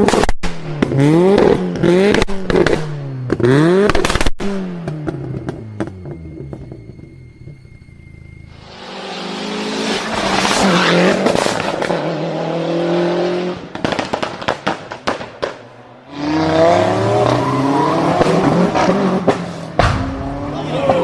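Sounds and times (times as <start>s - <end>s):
exhaust pops and bangs: 0.0s - 6.8s, 13.7s - 15.6s, 19.2s - 21.0s
car engine revving hard: 16.1s - 20.7s.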